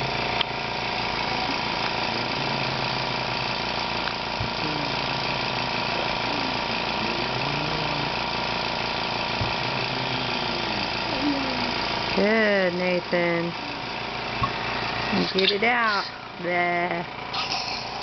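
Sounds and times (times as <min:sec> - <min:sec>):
machine blower hum: 0:00.0 - 0:18.0.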